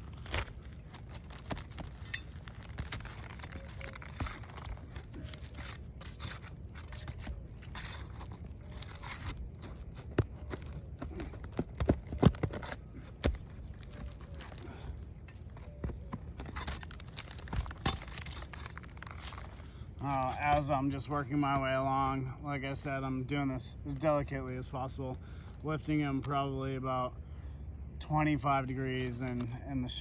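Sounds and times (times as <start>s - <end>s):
shingles cracking and tearing: 0.0s - 20.3s
pry bar scraping roof shingles: 0.2s - 19.7s.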